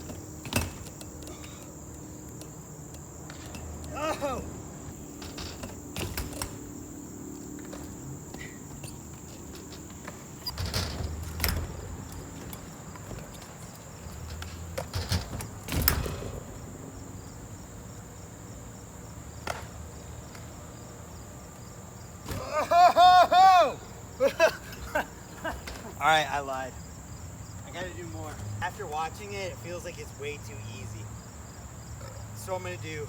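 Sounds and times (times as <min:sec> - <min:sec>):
bike knocks and scrapes: 0:00.0 - 0:21.2
crickets chirping: 0:00.0 - 0:33.0.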